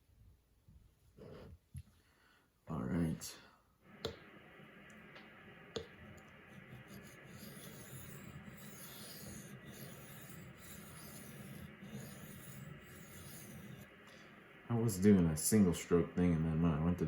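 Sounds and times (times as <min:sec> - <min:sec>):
knife scraping on sharpening stone: 0:07.3 - 0:13.8.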